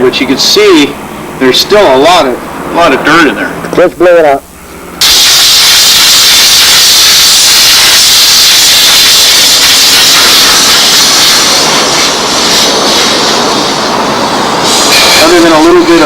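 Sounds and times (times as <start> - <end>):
steam cleaner jet blasting: 5.0 - 16.0.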